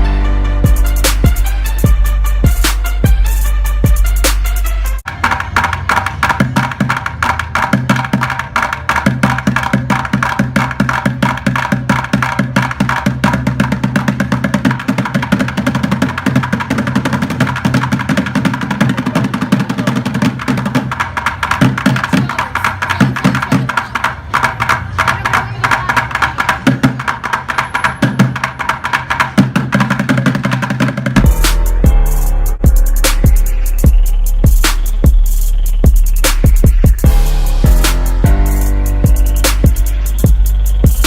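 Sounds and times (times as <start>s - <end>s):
steady pitched backing: 0.0s - 14.3s, 31.0s - 41.0s
fast dense drumming: 0.0s - 41.0s.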